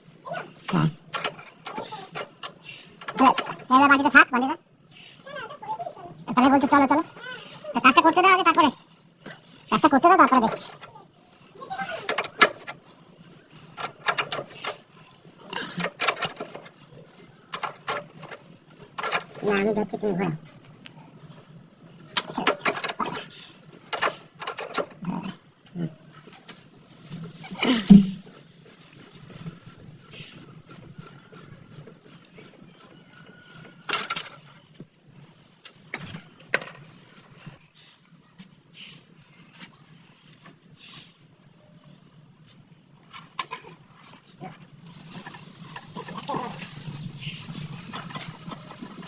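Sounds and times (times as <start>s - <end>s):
metal tools clicking: 17.5s - 18.3s.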